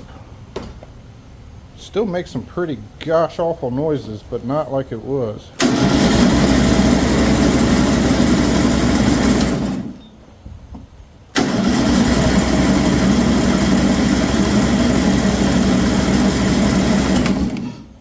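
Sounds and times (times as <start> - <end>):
engine cranking by starter: 5.6 - 10.2, 11.3 - 18.0.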